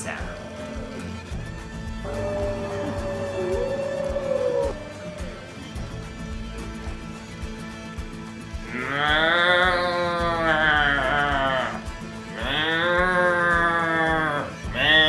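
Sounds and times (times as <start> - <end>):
guitar music: 0.0 - 15.0
farm animal calling: 2.0 - 5.8, 8.7 - 15.0.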